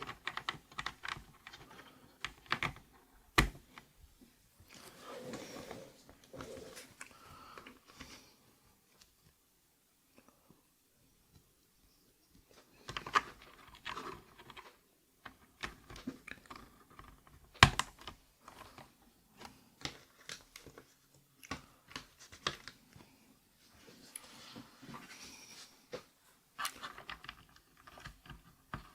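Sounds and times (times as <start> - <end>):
plastic keyboard clicks and knocks: 0.0 - 3.9, 12.8 - 22.8, 26.6 - 28.9.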